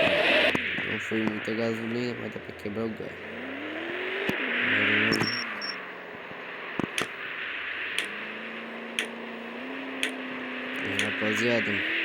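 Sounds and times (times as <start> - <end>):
car engine revving: 0.0 - 12.0
road and tyre noise: 0.0 - 12.0
sharp clicks: 5.1 - 5.8, 6.8 - 7.2, 8.0 - 8.2, 9.0 - 9.2, 10.8 - 11.2.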